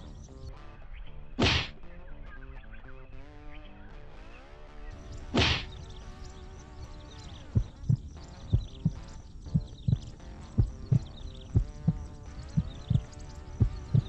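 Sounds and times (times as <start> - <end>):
background music: 0.0 - 14.0
heartbeat thumps: 5.3 - 6.0, 6.8 - 14.0.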